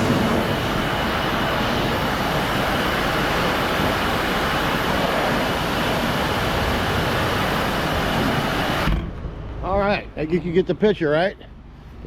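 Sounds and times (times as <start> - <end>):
pressure washer spraying water: 0.0 - 8.9.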